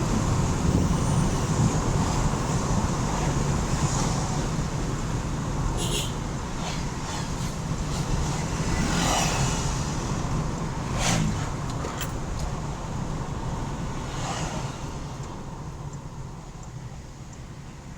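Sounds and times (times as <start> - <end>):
turbocharger air rushes: 6.5 - 11.8.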